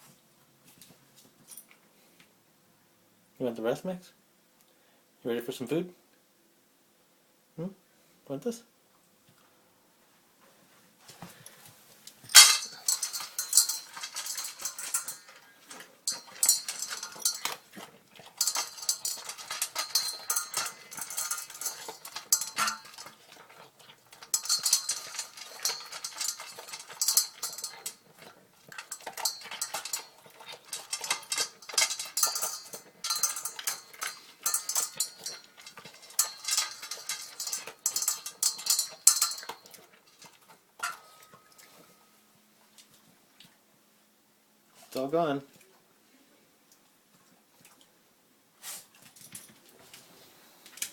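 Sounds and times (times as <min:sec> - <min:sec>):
dog eating from a bowl: 0:12.3 - 0:43.5.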